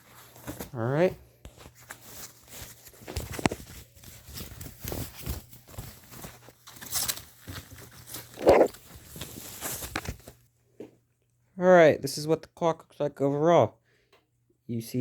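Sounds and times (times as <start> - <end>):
packaging rustling: 1.6 - 10.4.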